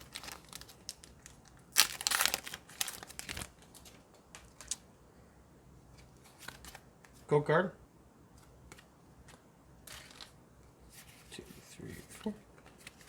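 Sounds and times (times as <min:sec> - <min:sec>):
foil wrapper crinkling: 0:00.0 - 0:04.8.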